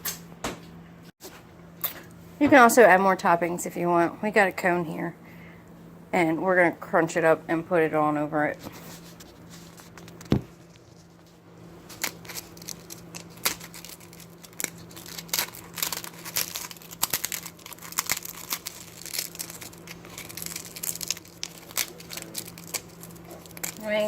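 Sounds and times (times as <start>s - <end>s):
ice cream cone crackling: 8.8s - 24.0s.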